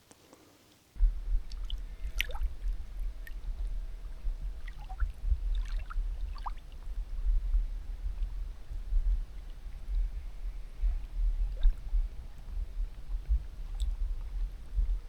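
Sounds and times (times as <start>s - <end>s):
wind buffeting microphone: 1.0s - 15.0s.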